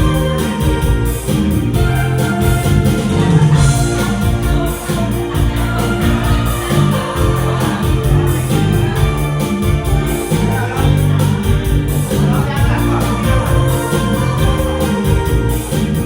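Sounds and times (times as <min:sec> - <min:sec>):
music with steady beat: 0:00.0 - 0:16.0
sustained bass line: 0:00.0 - 0:16.0.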